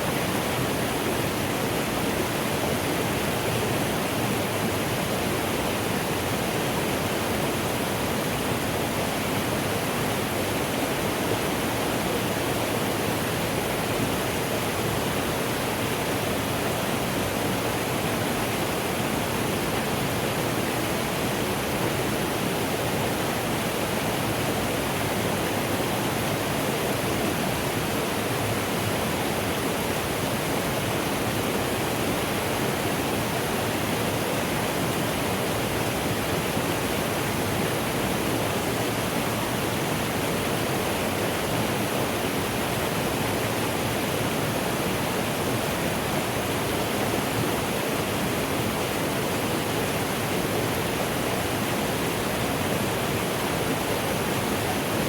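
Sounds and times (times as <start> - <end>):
mountain stream rushing: 0.0 - 55.0.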